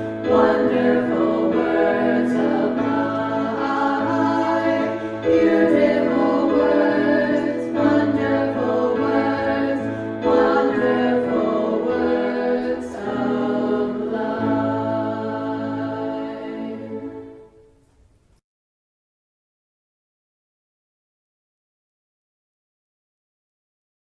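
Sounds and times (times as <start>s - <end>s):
choir singing a hymn: 0.0s - 17.7s.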